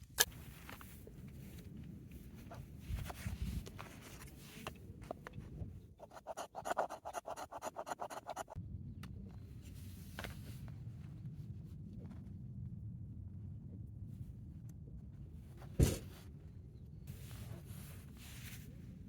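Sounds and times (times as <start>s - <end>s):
rapid scraping strokes: 6.0s - 8.6s.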